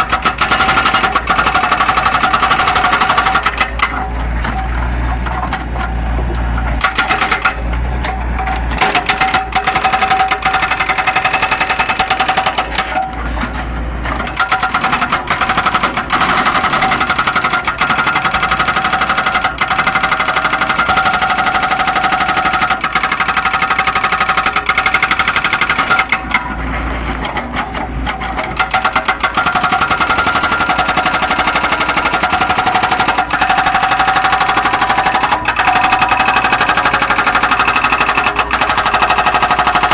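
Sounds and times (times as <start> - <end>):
excavator engine clattering: 0.0 - 39.9.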